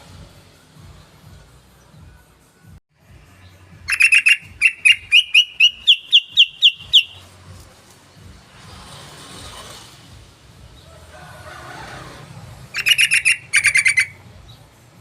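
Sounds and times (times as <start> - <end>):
bird song: 3.3 - 7.3, 12.8 - 15.0.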